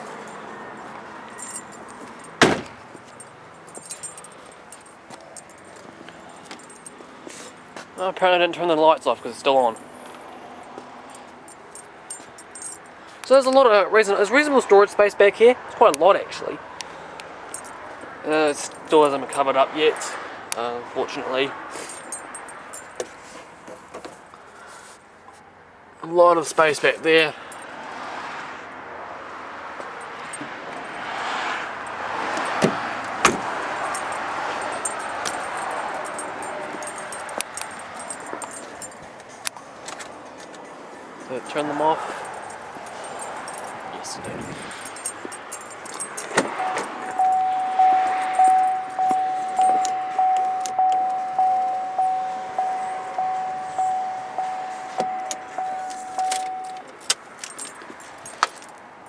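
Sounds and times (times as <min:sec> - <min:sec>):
vehicle road noise: 0:00.0 - 0:59.0
electronic warning chime: 0:46.6 - 0:56.8.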